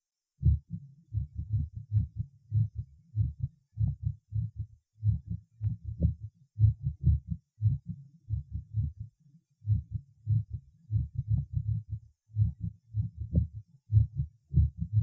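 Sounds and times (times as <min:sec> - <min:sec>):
fast irregular heartbeat thumps: 0:00.4 - 0:09.1, 0:09.7 - 0:15.0.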